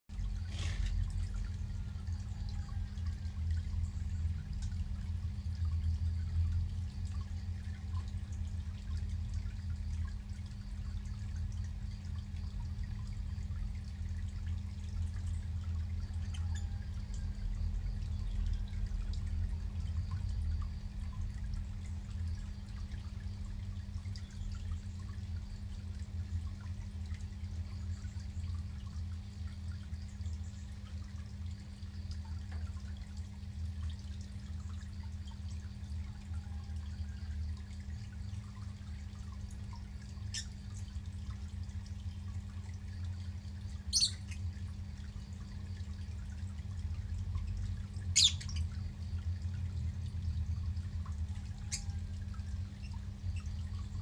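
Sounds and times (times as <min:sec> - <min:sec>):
constant low hum: 0:00.0 - 0:54.0
water pouring into pond: 0:00.1 - 0:54.0.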